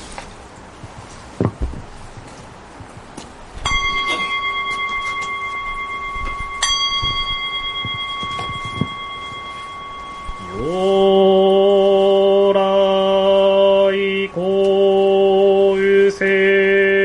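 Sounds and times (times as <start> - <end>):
small bell ringing: 3.6 - 11.3
man chanting: 10.4 - 17.0.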